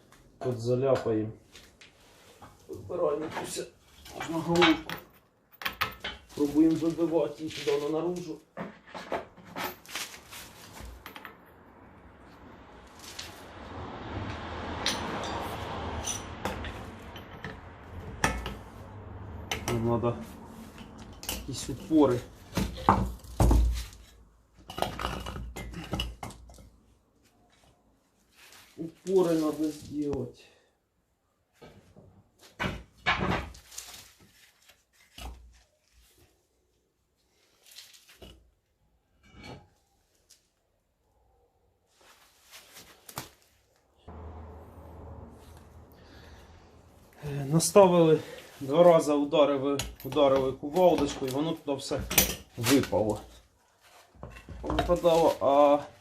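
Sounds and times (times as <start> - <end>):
metal parts and tools clattering: 2.4 - 7.0, 20.7 - 24.0, 24.6 - 26.7, 49.5 - 53.4
metal tools knocking on wheel hub: 14.8 - 18.7.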